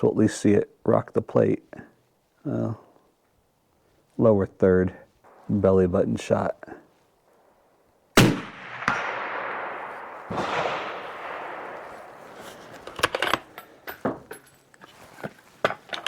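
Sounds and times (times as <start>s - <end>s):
rifle shots with rolling echo: 5.3s - 6.4s, 7.3s - 13.8s.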